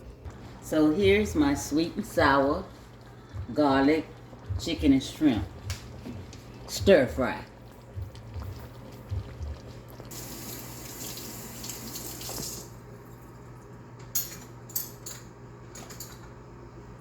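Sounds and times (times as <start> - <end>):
water running from tap: 10.1 - 12.8.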